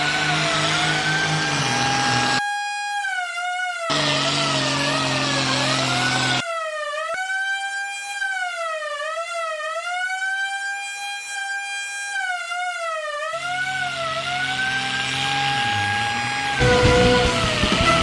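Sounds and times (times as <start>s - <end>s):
police siren wailing: 2.0s - 18.0s
vehicle engine running: 16.3s - 18.0s.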